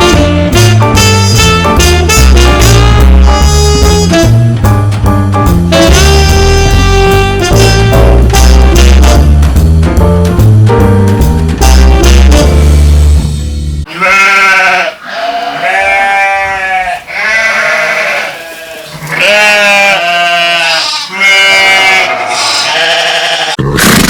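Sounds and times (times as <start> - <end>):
jazzy music with brass and bass: 0.0 - 13.8
livestock bleating: 13.9 - 23.6.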